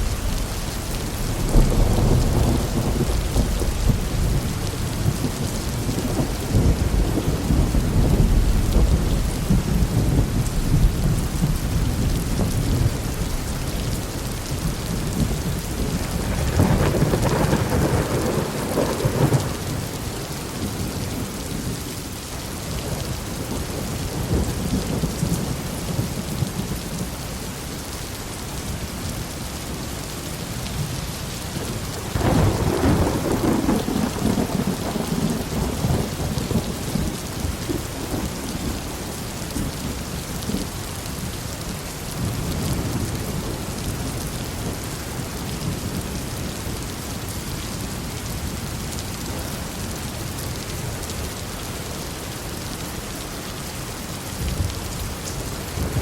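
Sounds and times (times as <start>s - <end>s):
thunder rumbling: 0.0s - 21.9s, 31.6s - 40.7s, 54.3s - 56.0s
heavy rain falling: 0.0s - 56.0s.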